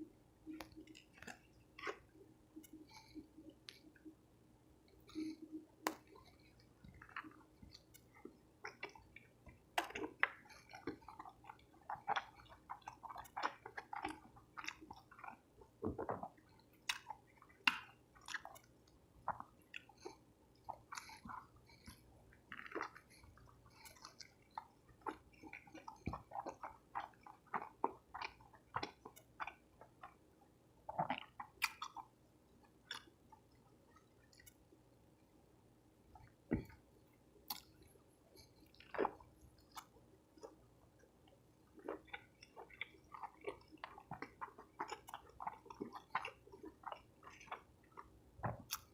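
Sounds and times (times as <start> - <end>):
chewing soft tacos: 0.0 - 48.9.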